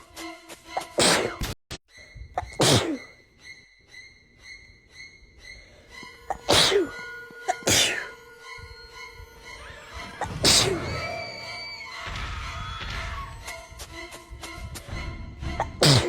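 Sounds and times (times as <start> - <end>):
person sneezing: 1.0 - 1.4, 2.4 - 3.1, 6.3 - 8.2, 10.2 - 10.9, 15.6 - 16.0.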